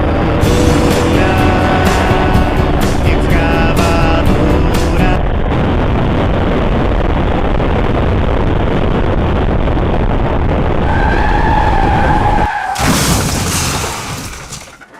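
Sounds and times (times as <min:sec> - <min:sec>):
vehicle road and wind rush: 0:00.0 - 0:13.6
high squeal: 0:10.8 - 0:12.9.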